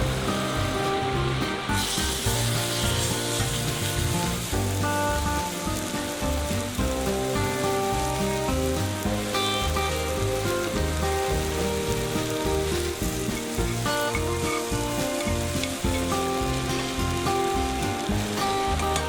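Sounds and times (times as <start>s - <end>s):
instrumental background music: 0.0s - 19.0s
steak sizzling in a pan: 0.0s - 19.0s.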